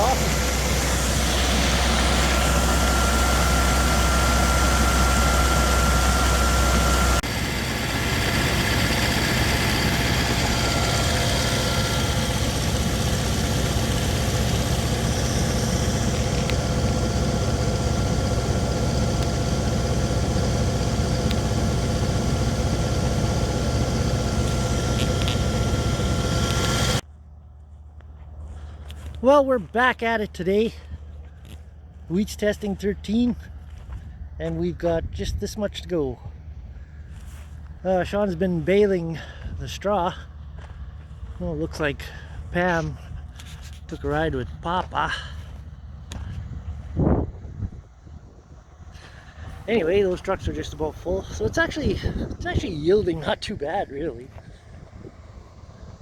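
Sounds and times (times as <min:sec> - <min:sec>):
thin steady whine: 0:00.0 - 0:27.0
harvesting machine engine hum: 0:00.0 - 0:56.0.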